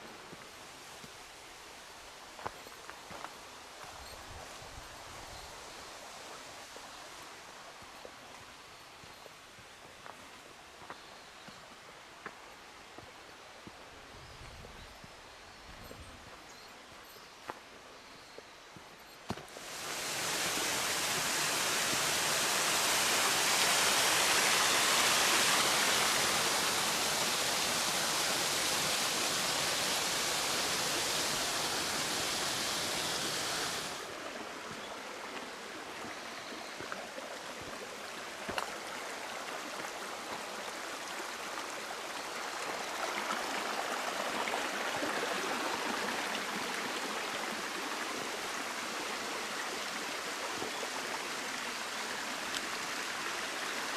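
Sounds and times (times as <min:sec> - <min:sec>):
mountain stream rushing water: 0:19.3 - 0:53.9.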